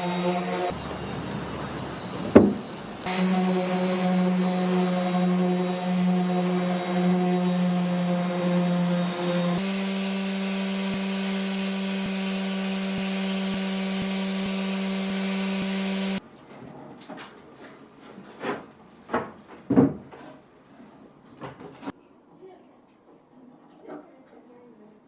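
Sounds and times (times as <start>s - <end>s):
electric power tool running: 0.0s - 16.2s.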